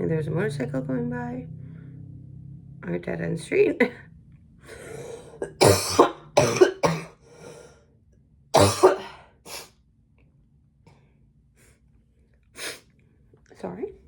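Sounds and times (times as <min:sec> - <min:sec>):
woman clearing her throat: 0:05.4 - 0:07.2, 0:08.6 - 0:09.3
woman coughing: 0:05.4 - 0:07.2, 0:08.6 - 0:09.3.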